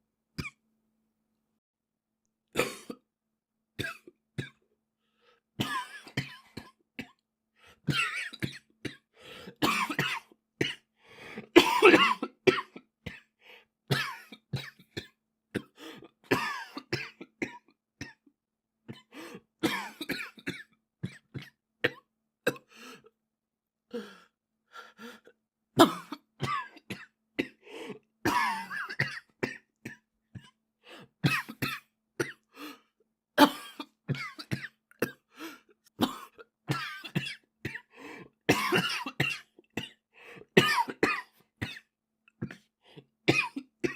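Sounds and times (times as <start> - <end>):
boy coughing: 11.6 - 12.8, 28.3 - 30.0, 38.5 - 40.0, 40.6 - 42.6.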